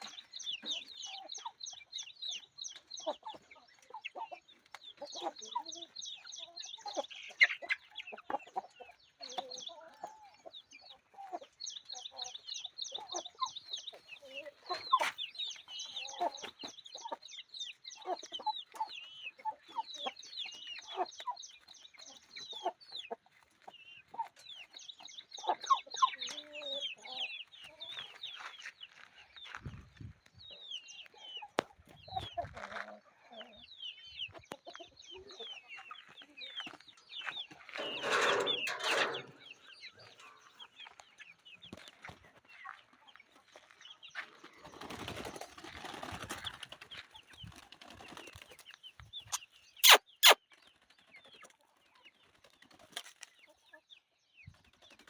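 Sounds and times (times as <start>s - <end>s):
chickens clucking: 0.0s - 55.0s
high short chirps: 49.8s - 50.4s.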